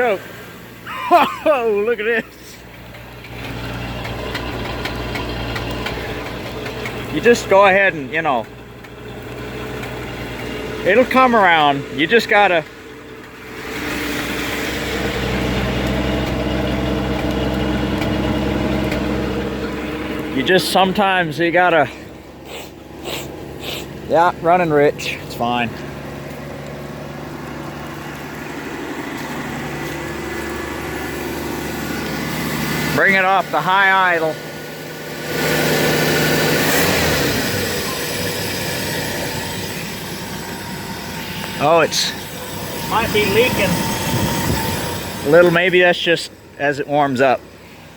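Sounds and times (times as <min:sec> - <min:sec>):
truck engine high idle: 0:00.0 - 0:47.9.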